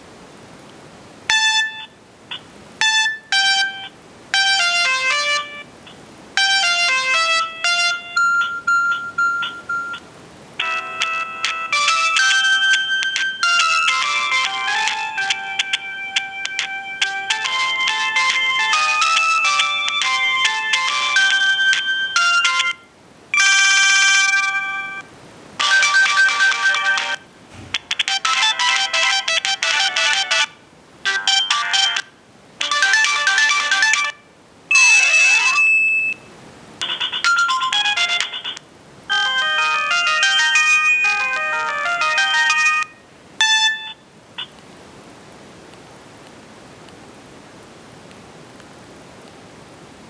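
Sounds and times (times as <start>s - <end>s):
faint steady hiss: 0.0s - 50.0s
electronic phone ringtones: 1.3s - 5.6s, 6.4s - 22.8s, 23.4s - 25.0s, 25.6s - 27.2s, 28.0s - 30.5s, 31.1s - 32.0s, 32.6s - 44.5s.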